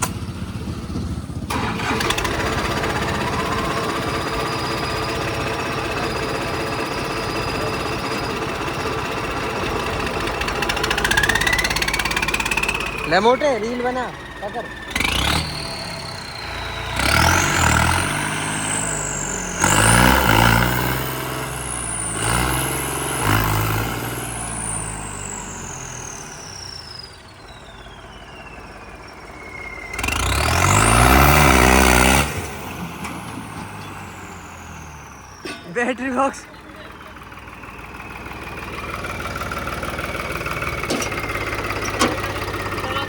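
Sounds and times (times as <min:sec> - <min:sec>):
tractor engine revving: 0:00.0 - 0:43.0
thin high whistle: 0:27.4 - 0:30.8.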